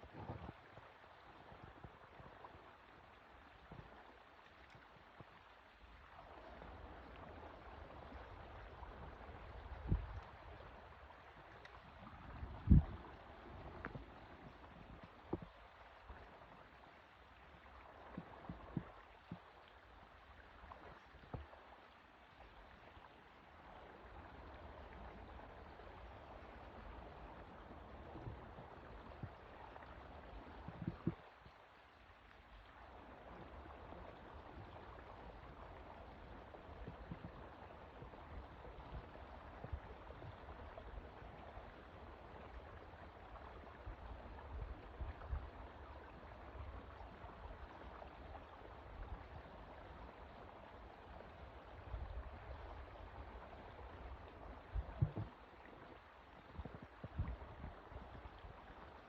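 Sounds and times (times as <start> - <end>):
faint water noise: 0.0 - 59.0.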